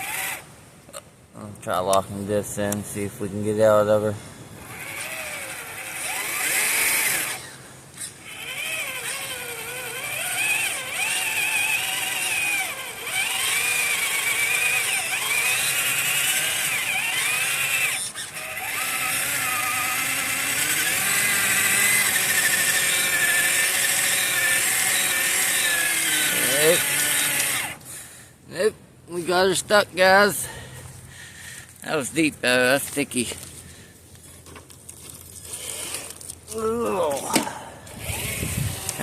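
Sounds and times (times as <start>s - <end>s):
electric motor whining: 0.0s - 0.4s, 4.6s - 27.9s, 36.9s - 39.0s
wheels spinning in mud: 4.6s - 27.9s, 37.9s - 39.0s.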